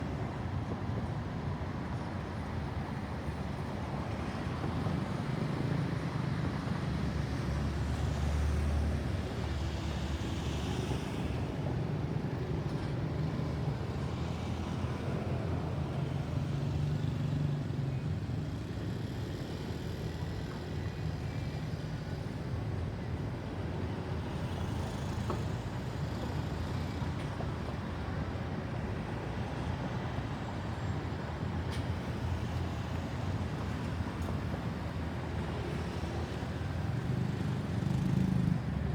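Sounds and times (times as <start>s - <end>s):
vehicles passing: 35.7s - 38.9s.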